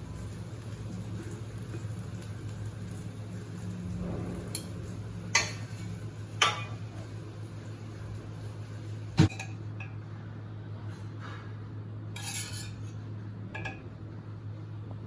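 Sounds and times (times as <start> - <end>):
utensils and dishes clinking: 4.2 - 7.1, 12.1 - 13.0.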